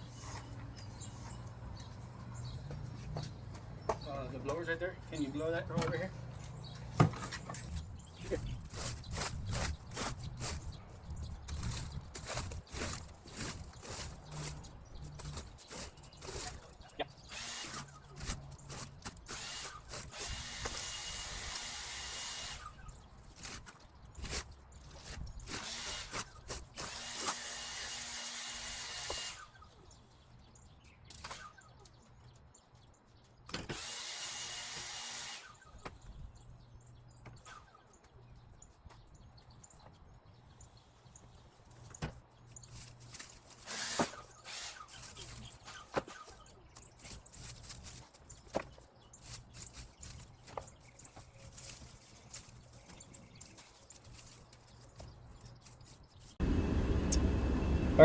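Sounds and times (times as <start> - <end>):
leaf blower whine and air rush: 56.4 - 58.0.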